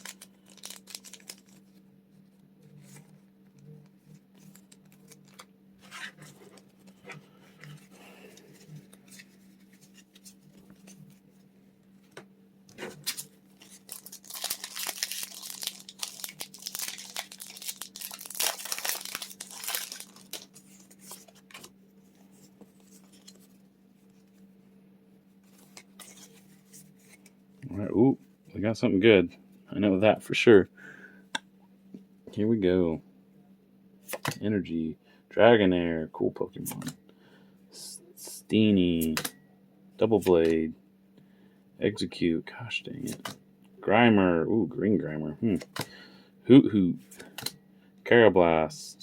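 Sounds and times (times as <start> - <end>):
card handling clicks and rustles: 0.0 - 1.8, 4.3 - 11.2, 12.0 - 24.4, 25.5 - 27.4, 34.1 - 34.4, 43.0 - 43.4, 45.5 - 46.0, 47.1 - 47.6
foil wrapper crinkling and tearing: 0.0 - 1.8, 13.0 - 21.6
faint steady hum: 0.0 - 49.0.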